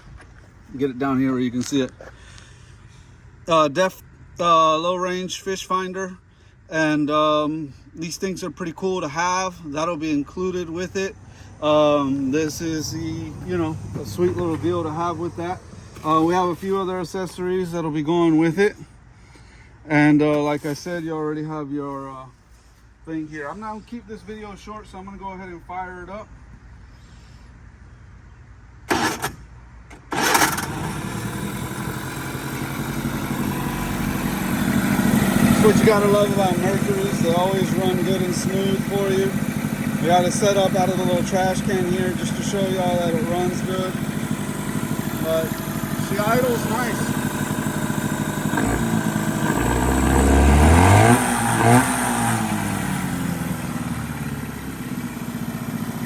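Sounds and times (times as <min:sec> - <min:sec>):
outboard motor starting and running: 0:12.4 - 0:17.0, 0:28.9 - 0:56.0.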